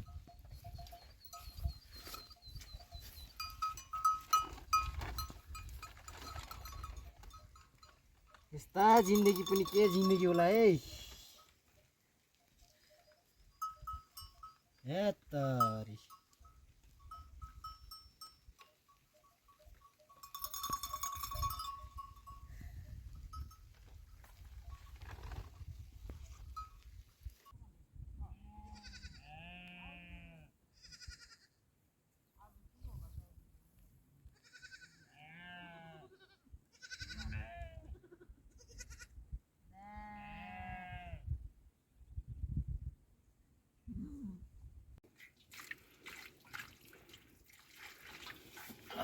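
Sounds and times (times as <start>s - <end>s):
sheep bells tinkling: 0.0s - 25.0s, 25.6s - 27.5s
sheep bleating: 28.5s - 31.5s, 34.4s - 39.1s.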